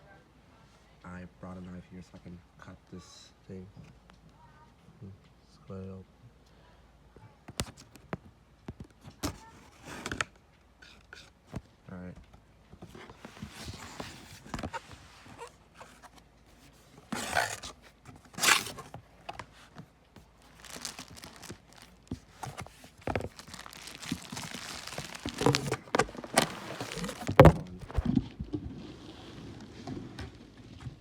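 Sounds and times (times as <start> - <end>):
cardboard rustling: 12.8 - 28.3
cardboard tearing: 17.0 - 19.4, 20.4 - 28.3
box thunk: 17.1 - 19.4, 20.6 - 28.2.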